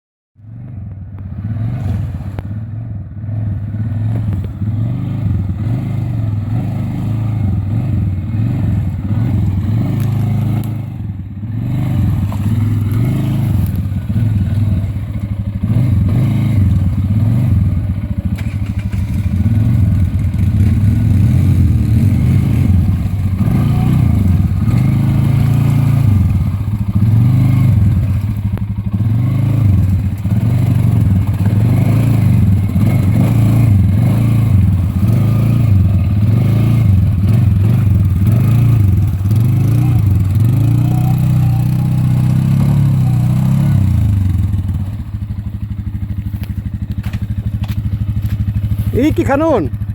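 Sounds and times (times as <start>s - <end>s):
atv engine running: 0.4s - 49.9s.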